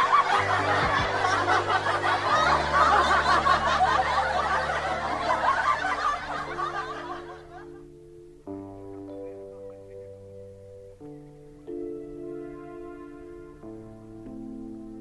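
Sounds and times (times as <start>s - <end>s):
people laughing: 0.0s - 7.8s
background music with low notes: 0.0s - 15.0s.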